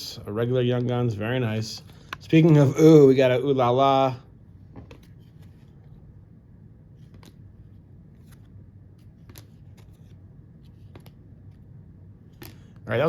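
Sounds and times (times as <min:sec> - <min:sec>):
low steady hum: 0:00.0 - 0:13.0
trading cards being flipped: 0:06.9 - 0:11.6.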